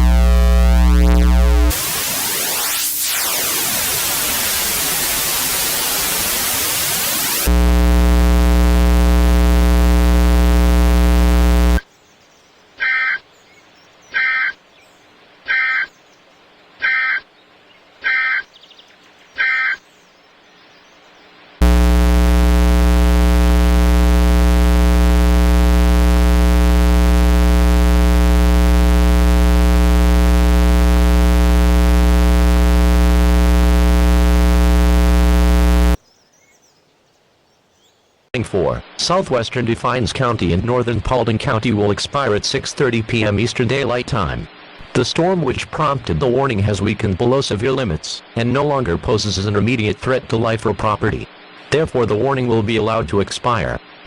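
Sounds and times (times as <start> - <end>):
harsh low alert buzz: 0.0 - 11.8, 21.6 - 36.0.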